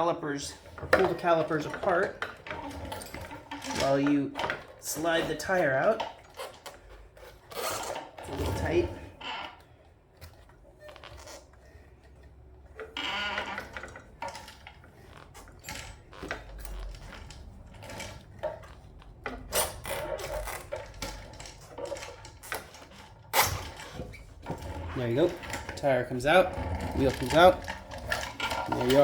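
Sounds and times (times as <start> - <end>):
brake rotors scraping metal: 10.8 - 29.0.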